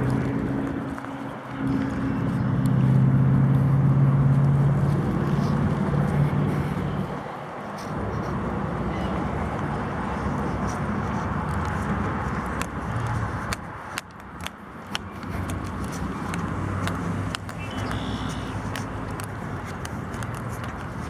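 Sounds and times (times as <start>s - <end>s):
cars crossing a bridge: 0.0s - 21.0s.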